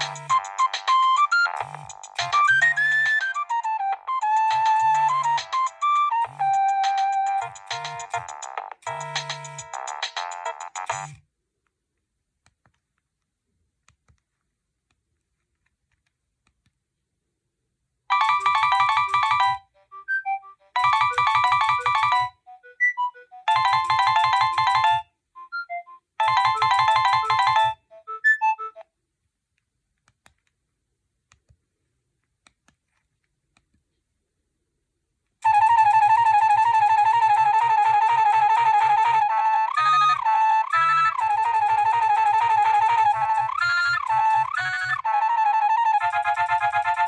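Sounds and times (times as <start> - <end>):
mobile phone ringtone: 0.0 - 10.9, 18.1 - 28.8, 35.4 - 47.0.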